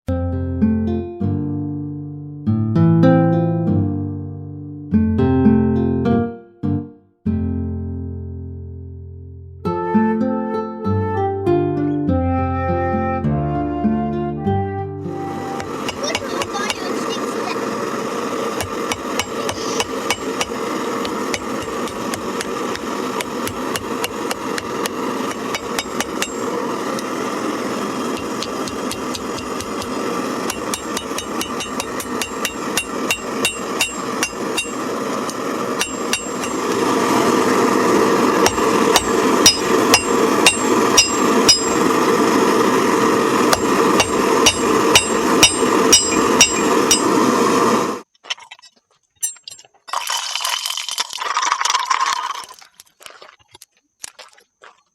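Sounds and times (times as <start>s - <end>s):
steady rushing noise: 15.3s - 48.0s
hammer striking metal on anvil: 15.6s - 16.9s, 18.6s - 24.7s, 25.3s - 26.5s, 28.2s - 36.8s, 38.4s - 42.0s, 43.5s - 47.3s.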